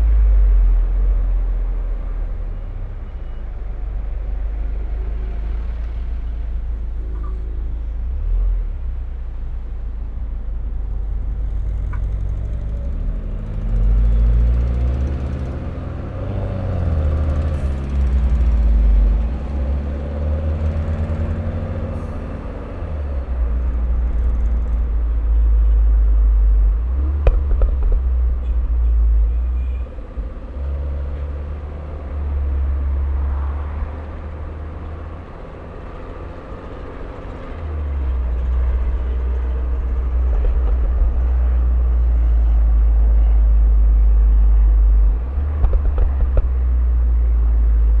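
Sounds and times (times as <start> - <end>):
exhaust pops: 27.1 - 28.7, 45.0 - 46.9.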